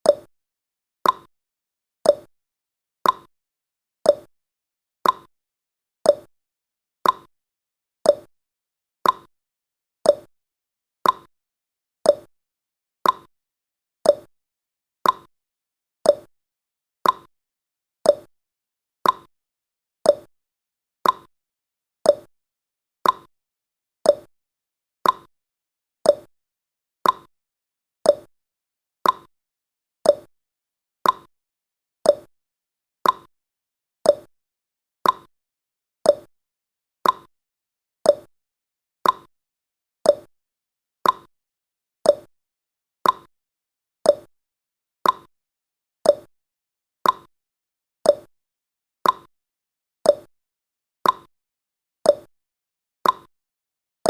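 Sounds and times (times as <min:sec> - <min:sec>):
clock ticking: 0:29.0 - 0:29.3, 0:35.0 - 0:35.3, 0:37.0 - 0:37.3, 0:39.0 - 0:39.3, 0:41.0 - 0:41.3, 0:43.0 - 0:43.3, 0:45.0 - 0:45.3, 0:47.0 - 0:47.3, 0:49.0 - 0:49.3, 0:53.0 - 0:53.3.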